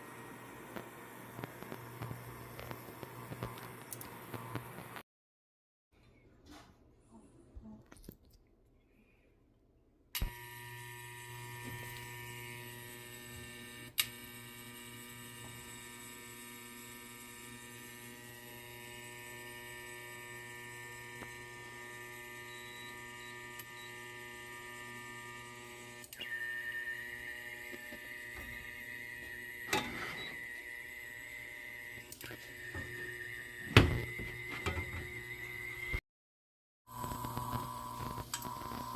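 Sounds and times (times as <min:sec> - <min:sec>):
induction cooktop humming: 0:26.8 - 0:36.0.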